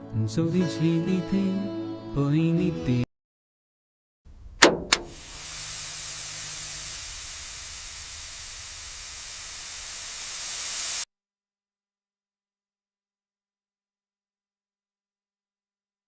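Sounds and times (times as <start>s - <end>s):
sharp clicks: 4.6s - 5.3s
high hissing spray: 5.0s - 11.1s.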